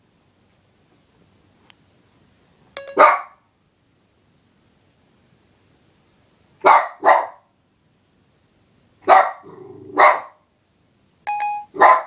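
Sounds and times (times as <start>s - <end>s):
dog barking: 3.0s - 3.4s, 6.6s - 7.5s, 9.0s - 10.4s, 11.7s - 12.0s
dog growling: 9.4s - 10.0s.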